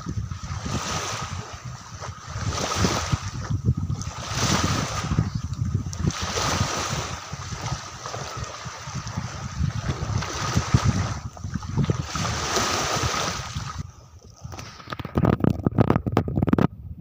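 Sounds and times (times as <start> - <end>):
sea waves washing on beach: 0.0 - 15.2
wind buffeting microphone: 0.0 - 17.0.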